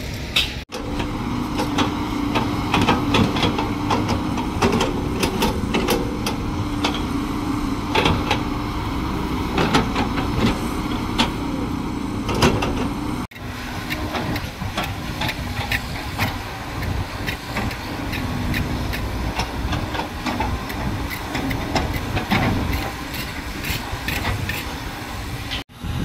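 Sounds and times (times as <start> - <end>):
diesel construction machine running: 0.0 - 26.0
metal knocks and clanks: 0.4 - 7.1, 12.2 - 13.0, 14.1 - 24.8.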